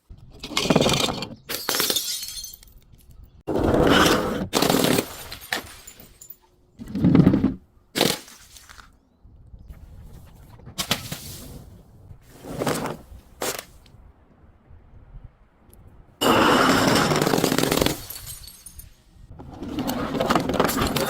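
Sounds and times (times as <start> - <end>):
glass breaking: 1.5 - 2.8, 4.6 - 6.5, 16.2 - 19.0
objects smashing and crunching: 4.5 - 6.4, 16.2 - 18.9.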